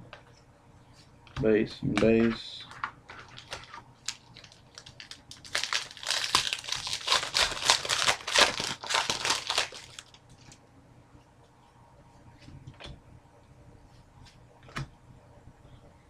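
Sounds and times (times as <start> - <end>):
wrapper crinkling: 3.1 - 10.6.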